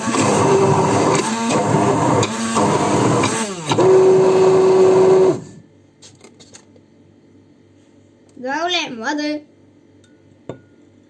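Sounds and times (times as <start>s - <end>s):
electric blender motor running: 0.0s - 5.6s.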